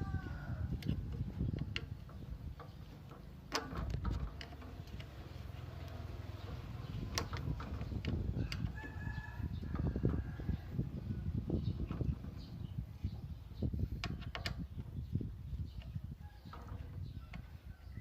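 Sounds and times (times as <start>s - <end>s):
rooster crowing: 0.0s - 0.7s, 8.4s - 10.7s
low steady rumble: 0.0s - 18.0s.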